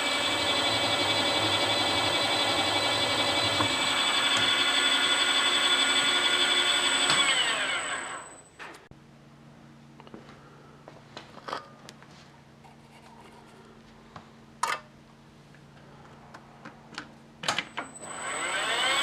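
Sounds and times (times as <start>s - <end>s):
milling machine spindle motor: 0.0s - 8.4s, 18.0s - 19.0s
faint steady hum: 7.8s - 18.0s.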